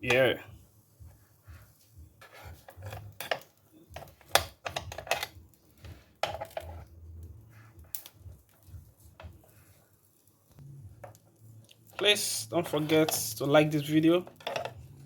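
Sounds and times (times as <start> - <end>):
utensil tapping waffle maker: 2.5 - 6.8.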